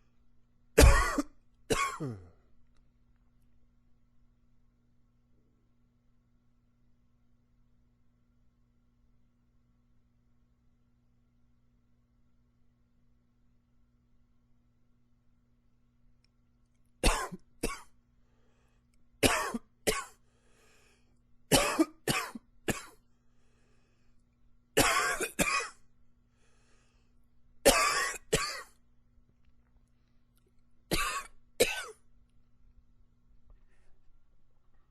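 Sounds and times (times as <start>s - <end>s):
man coughing: 0.8s - 2.4s, 17.0s - 17.9s, 19.2s - 20.2s, 21.5s - 23.0s, 24.8s - 25.8s, 27.7s - 28.7s, 30.9s - 32.0s.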